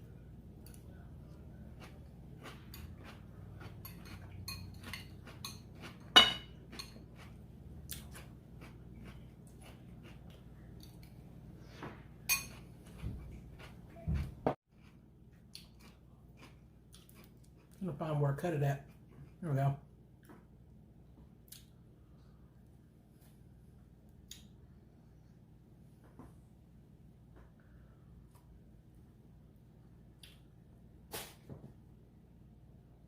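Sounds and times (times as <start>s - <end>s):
low background hum: 0.0s - 33.0s
cutlery clinking on dishes: 3.7s - 7.0s, 12.3s - 12.7s.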